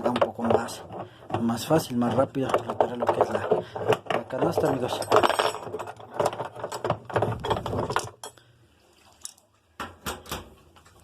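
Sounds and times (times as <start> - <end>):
metal hand tools clattering: 0.0 - 8.4.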